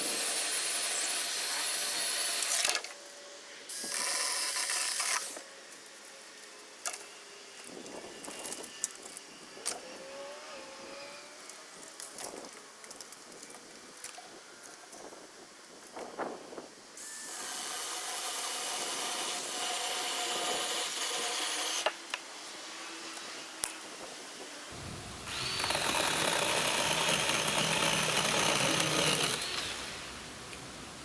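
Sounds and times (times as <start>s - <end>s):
small electric motor whining: 3.7s - 12.4s, 22.6s - 30.1s.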